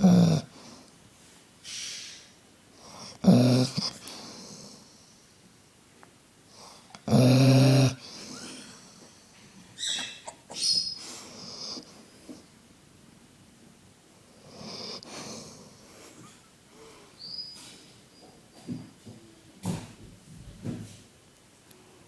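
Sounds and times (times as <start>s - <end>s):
dog snoring: 0.0s - 0.7s, 2.8s - 4.8s, 6.6s - 8.5s, 14.4s - 15.8s
parrot chirping and whistling: 9.8s - 11.1s, 17.2s - 17.6s.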